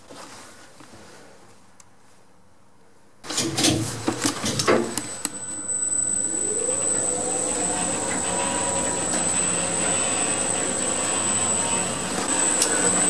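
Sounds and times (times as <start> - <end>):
relay clicks and clunks: 3.3 - 13.0
constant high-pitched whine: 5.2 - 13.0
motor whine: 5.2 - 13.0
steady running hum: 5.4 - 13.0.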